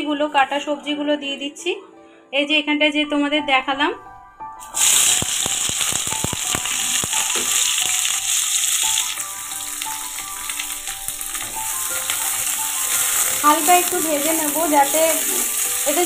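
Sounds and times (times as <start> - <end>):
vegetables sizzling in hot oil: 4.6 - 16.0
sharp taps and clicks: 5.1 - 8.2.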